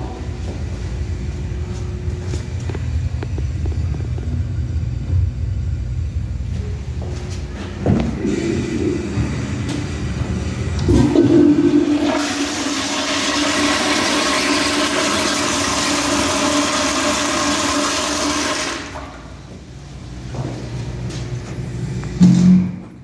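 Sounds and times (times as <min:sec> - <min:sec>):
low hum: 0:00.0 - 0:12.7
toilet flushing: 0:07.9 - 0:19.5.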